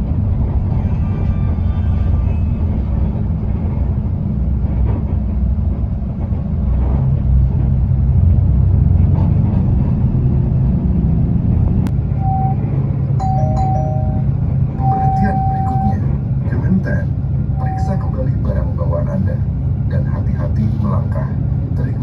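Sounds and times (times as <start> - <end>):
bus engine and road rumble: 0.0 - 22.0
short electronic chime: 13.2 - 16.0.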